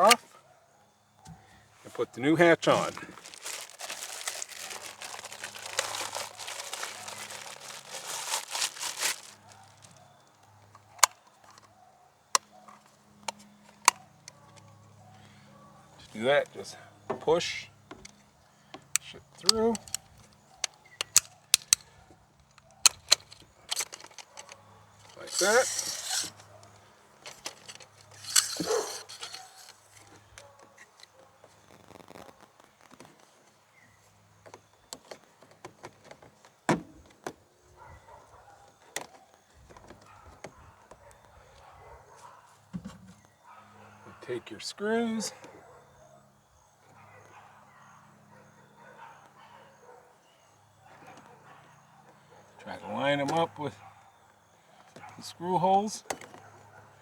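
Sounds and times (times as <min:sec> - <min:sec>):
material crinkling and rustling: 0:02.6 - 0:11.6, 0:22.6 - 0:37.1
brief scrape: 0:25.3 - 0:26.4.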